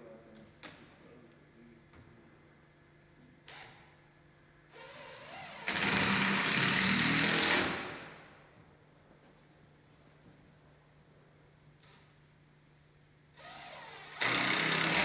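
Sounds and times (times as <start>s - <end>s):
power drill driving screw into wood: 4.8s - 7.9s, 13.4s - 15.0s.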